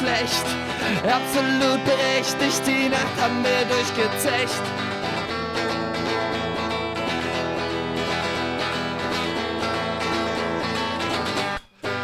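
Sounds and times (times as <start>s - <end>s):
strummed acoustic guitar: 0.0s - 12.0s.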